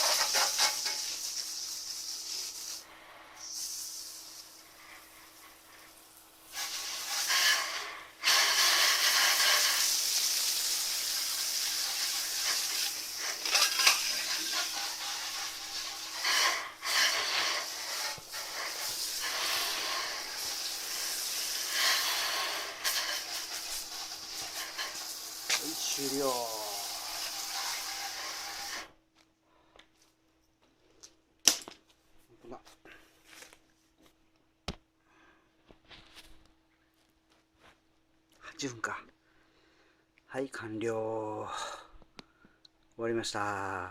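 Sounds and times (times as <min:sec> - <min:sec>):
water spraying on metal stove: 0:00.0 - 0:29.0.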